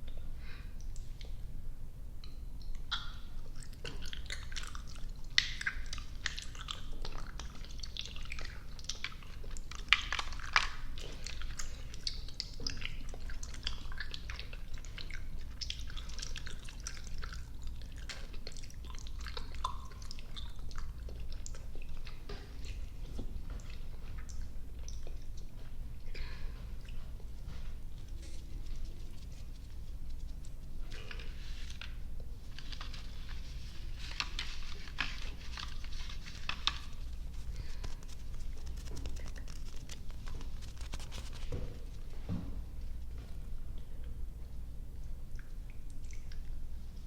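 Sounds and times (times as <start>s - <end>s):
sharp mouth snaps: 2.2s - 3.3s
chewing sticky candy: 2.3s - 42.2s.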